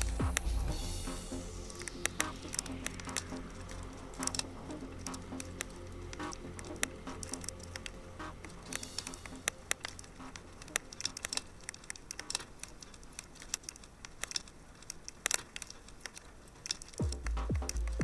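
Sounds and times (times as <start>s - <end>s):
electronic bass kicks: 0.0s - 1.7s, 17.0s - 18.0s
log fire crackling: 0.0s - 18.0s.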